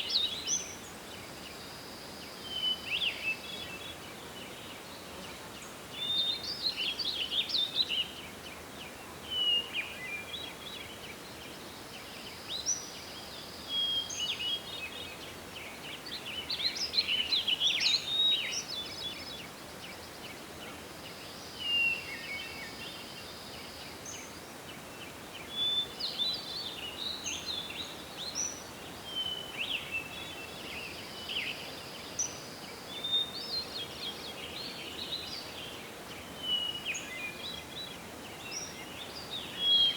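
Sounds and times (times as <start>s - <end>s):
steady background hiss: 0.0s - 39.9s
birds singing: 25.4s - 39.9s.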